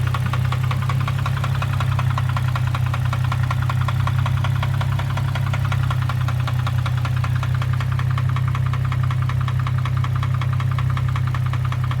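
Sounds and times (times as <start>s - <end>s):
engine knocking at idle: 0.0s - 12.0s.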